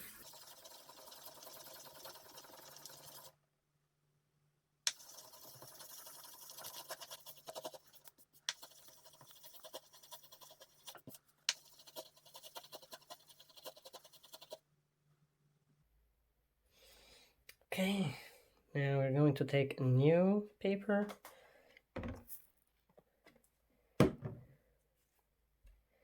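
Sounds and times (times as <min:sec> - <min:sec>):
sandpaper rasping on glass: 0:05.0 - 0:14.6.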